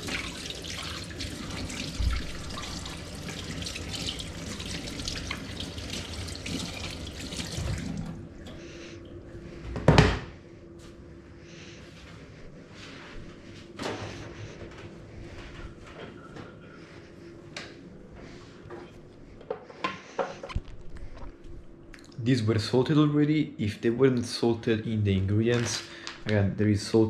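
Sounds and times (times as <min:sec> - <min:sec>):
water running from a tap: 0:00.0 - 0:08.2.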